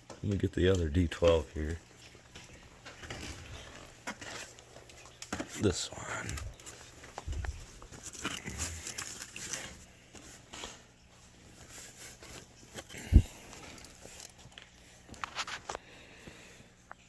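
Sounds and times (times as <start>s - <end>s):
toy and box rustling: 0.7s - 10.8s.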